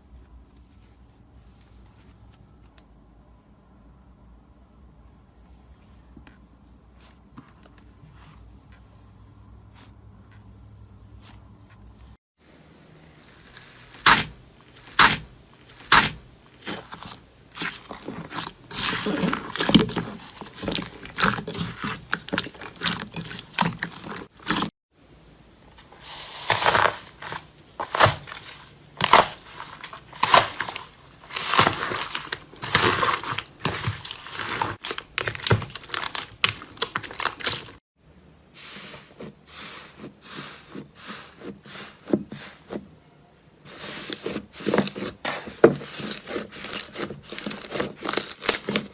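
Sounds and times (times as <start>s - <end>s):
slime crunching and crackling: 13.1s - 24.8s, 26.3s - 37.8s, 43.8s - 48.9s.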